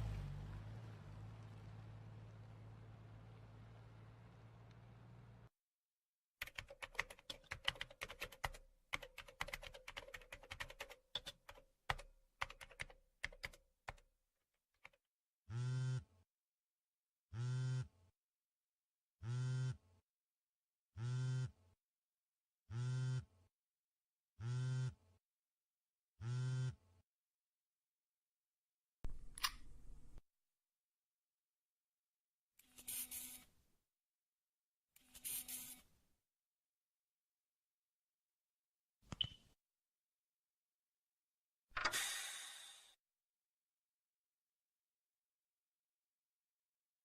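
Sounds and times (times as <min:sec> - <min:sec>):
computer keyboard typing: 0:06.4 - 0:14.0.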